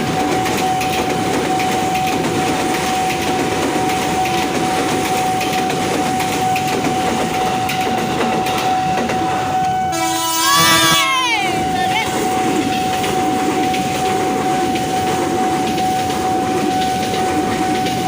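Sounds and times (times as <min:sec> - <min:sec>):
train rumbling past: 0:00.0 - 0:18.0
wheels clattering on rails: 0:00.0 - 0:18.0
steady high tone: 0:08.8 - 0:12.8.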